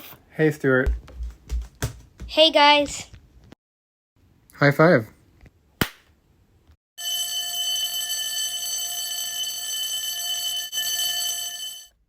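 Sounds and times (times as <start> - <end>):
electric bell ringing: 7.0 - 12.0.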